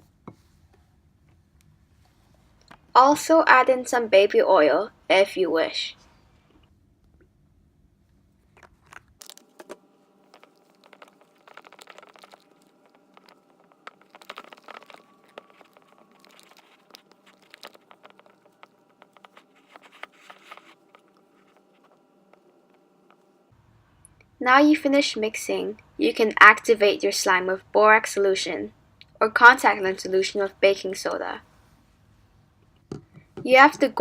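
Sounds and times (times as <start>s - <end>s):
slime crackling and squishing: 8.6s - 22.8s.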